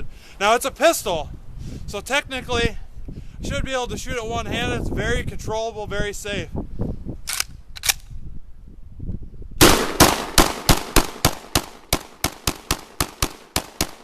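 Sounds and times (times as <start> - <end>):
sharp gun clicks: 7.2 - 8.1, 9.6 - 14.0
pistol gunshots: 9.6 - 14.0.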